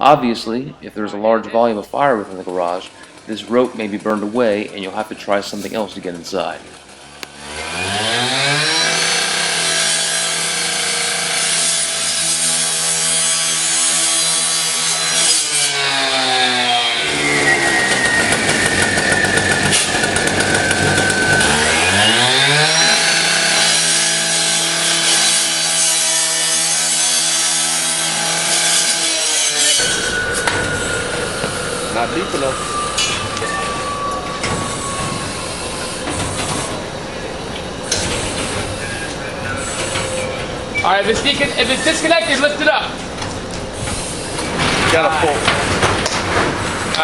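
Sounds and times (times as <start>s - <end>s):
power saw revving: 2.3s - 40.2s
saw blade grinding metal: 5.3s - 6.1s, 7.4s - 37.2s.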